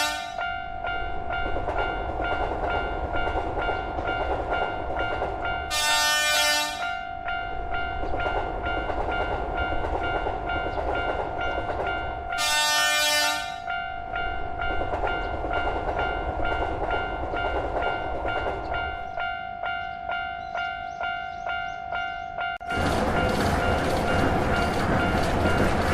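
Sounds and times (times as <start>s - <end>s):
train horn: 0.0s - 0.5s, 5.7s - 7.0s, 12.4s - 13.7s
train rumbling by: 0.8s - 6.1s, 7.4s - 21.8s, 22.4s - 25.9s
level-crossing bell clanging: 13.6s - 25.9s.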